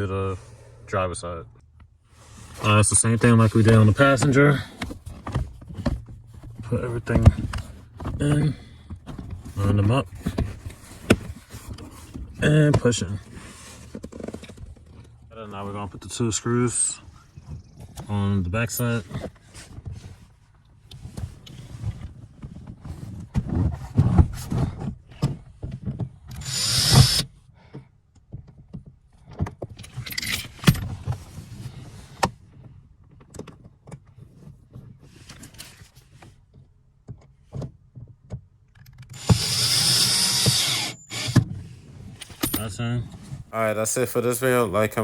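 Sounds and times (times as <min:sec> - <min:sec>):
tools and plastic trim rattling: 0:04.5 - 0:15.2, 0:37.5 - 0:42.7
power drill driving screws: 0:26.3 - 0:27.3, 0:39.0 - 0:41.5.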